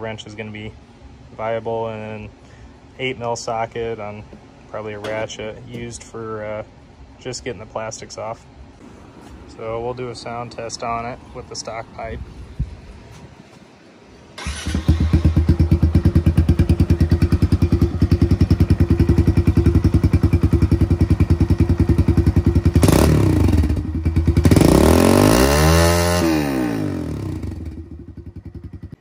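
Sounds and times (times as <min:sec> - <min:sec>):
motorcycle engine idling: 0:14.4 - 0:24.7, 0:26.8 - 0:29.0
motorcycle engine revving: 0:14.4 - 0:29.0.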